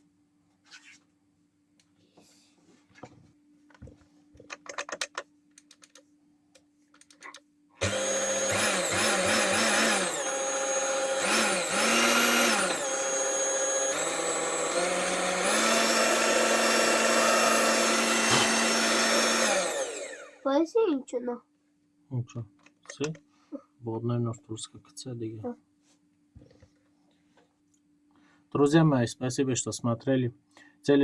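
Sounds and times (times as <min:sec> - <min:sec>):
mixer motor running: 0:07.8 - 0:20.4.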